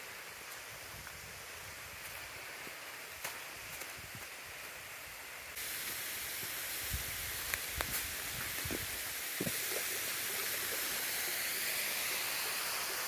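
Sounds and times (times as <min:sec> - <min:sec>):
waterfall rushing: 0:05.6 - 0:13.0.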